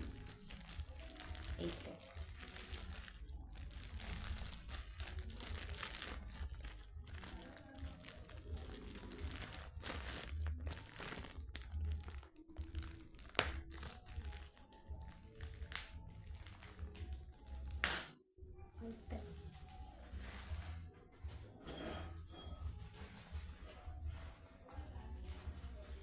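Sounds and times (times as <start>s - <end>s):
plastic wrapping crinkling: 0.0s - 18.0s.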